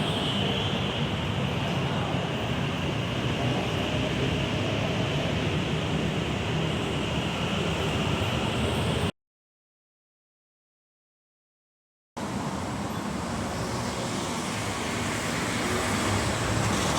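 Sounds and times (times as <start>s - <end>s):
vehicle rumble and hiss: 0.0s - 9.1s, 12.2s - 16.9s.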